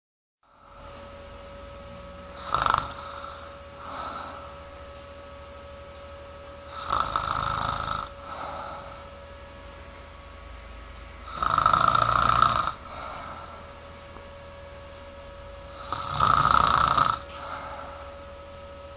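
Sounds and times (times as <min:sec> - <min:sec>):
man snoring: 0:00.4 - 0:00.9, 0:02.3 - 0:04.7, 0:06.7 - 0:09.1, 0:11.2 - 0:13.7, 0:15.7 - 0:18.2
faint steady hum: 0:00.4 - 0:18.9.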